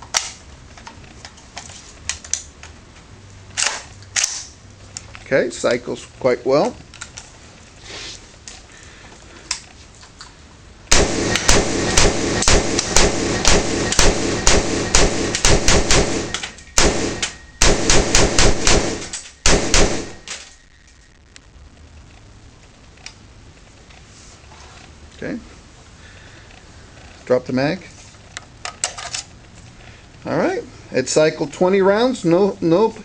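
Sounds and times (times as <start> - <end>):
rapid rifle fire echoing: 10.9 - 20.4.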